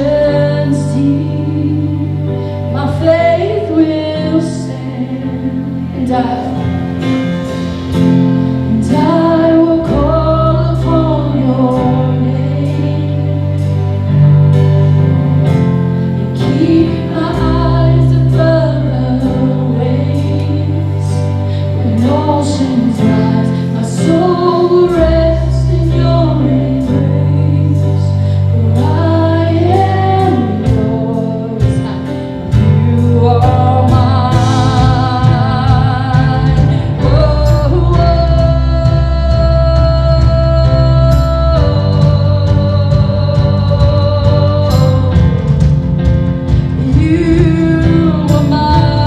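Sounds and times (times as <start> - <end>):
sustained bass notes: 0.0 - 49.0
worship band playing slow song: 0.0 - 49.0
person singing: 16.2 - 49.0.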